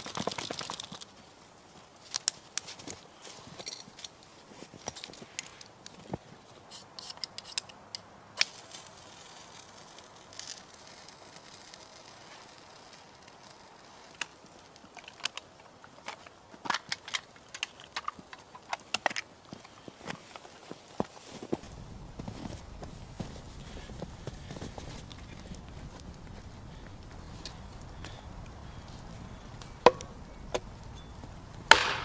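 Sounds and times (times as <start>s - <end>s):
sharp clicks and crackles: 0.0s - 1.2s, 7.0s - 19.8s
faint steady hiss: 0.0s - 32.0s.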